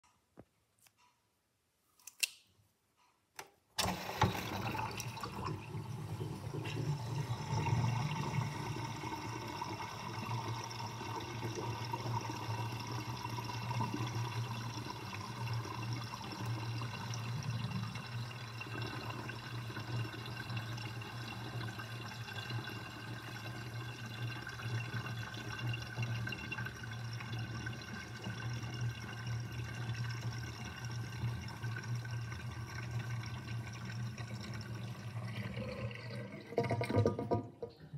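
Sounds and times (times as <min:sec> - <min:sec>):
water gurgling down sink drain: 0:03.8 - 0:37.9.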